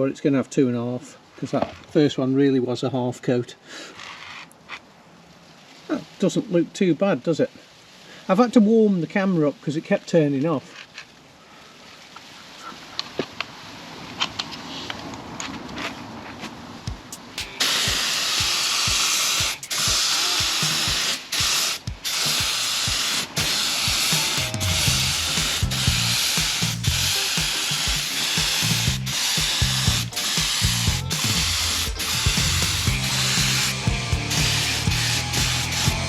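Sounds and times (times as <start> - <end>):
background music with low bass: 16.9 - 36.0
paint spray gun hissing: 17.1 - 36.0.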